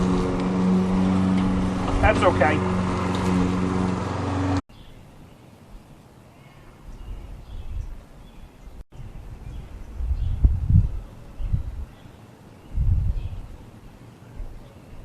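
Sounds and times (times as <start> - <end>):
lawn mower engine running: 0.0 - 4.6.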